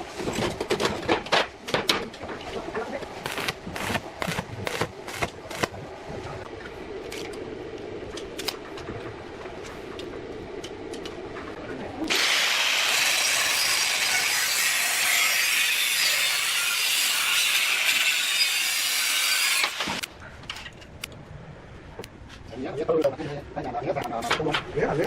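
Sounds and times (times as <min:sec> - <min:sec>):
power tool working metal: 0:12.1 - 0:20.1.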